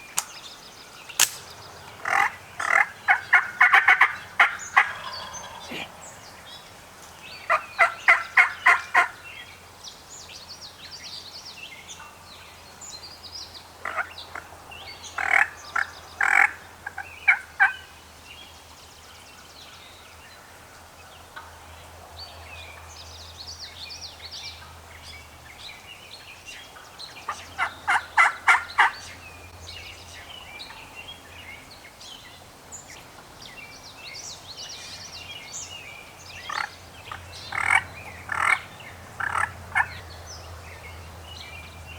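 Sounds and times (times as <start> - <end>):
songbirds chirping faintly: 0.0 - 41.9
turkeys gobbling: 2.0 - 6.0, 27.3 - 29.0.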